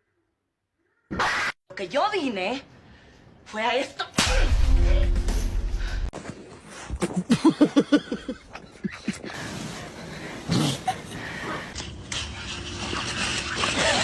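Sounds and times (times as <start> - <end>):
low rumble: 4.2 - 6.1.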